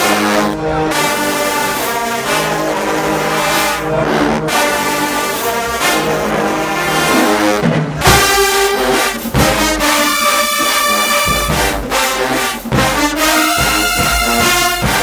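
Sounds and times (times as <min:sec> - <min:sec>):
brass chords: 0:00.0 - 0:15.0
sharp drum hits: 0:07.1 - 0:10.2, 0:11.2 - 0:15.0.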